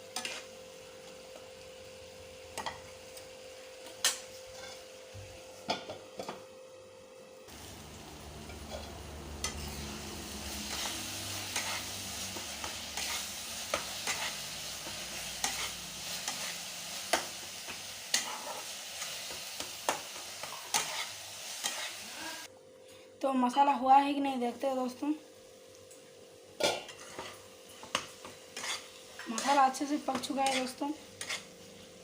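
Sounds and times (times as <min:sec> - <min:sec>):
masala sizzling in a pan: 0:00.0 - 0:22.5, 0:23.5 - 0:32.0
spatula knocking and scraping pan: 0:26.6 - 0:31.5.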